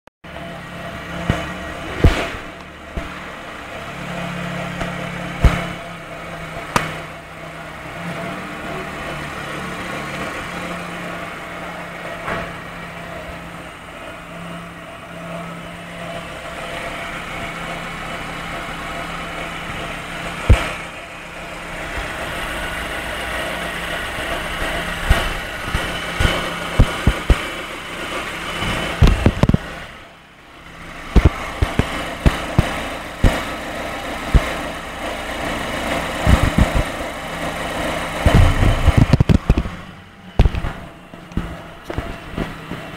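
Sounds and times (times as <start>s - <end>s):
car engine idling: 0.2s - 42.9s
sharp clicks or knocks: 6.7s - 7.0s, 31.1s - 33.4s, 40.4s - 42.8s.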